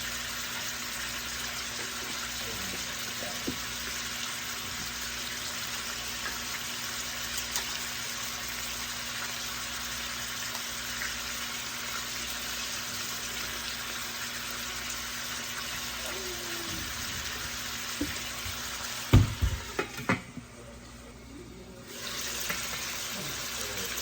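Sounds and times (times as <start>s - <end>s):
chicken sizzling in a pan: 0.0s - 20.1s, 21.8s - 24.0s.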